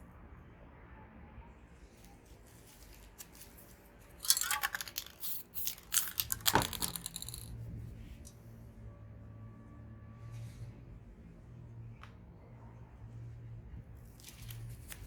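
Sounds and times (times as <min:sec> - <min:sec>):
clicking and rattling handling noise: 0:02.7 - 0:07.6.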